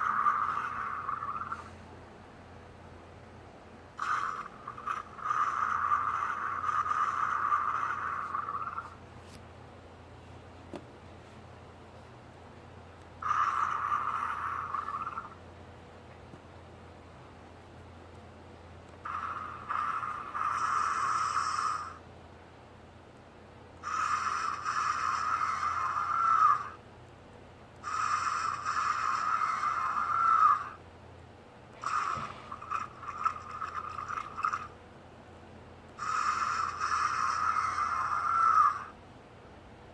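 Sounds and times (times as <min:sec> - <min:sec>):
toy dinosaur roaring: 0:00.0 - 0:01.8, 0:04.0 - 0:09.0, 0:13.2 - 0:15.4, 0:19.0 - 0:22.0, 0:23.8 - 0:26.8, 0:27.8 - 0:30.8, 0:31.8 - 0:34.7, 0:36.0 - 0:39.0.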